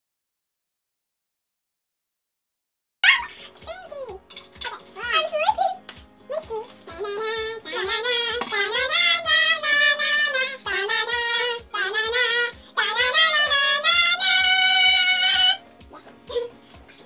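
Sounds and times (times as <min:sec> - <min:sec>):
high-pitched voice singing: 0:03.0 - 0:16.6
steady music beat: 0:03.4 - 0:17.0.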